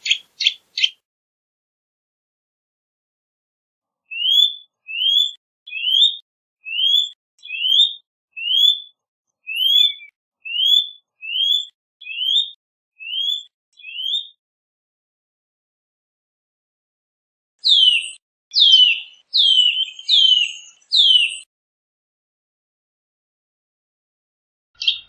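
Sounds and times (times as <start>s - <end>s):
bird whistling rising notes: 4.1s - 8.9s, 9.5s - 14.4s, 17.6s - 21.5s.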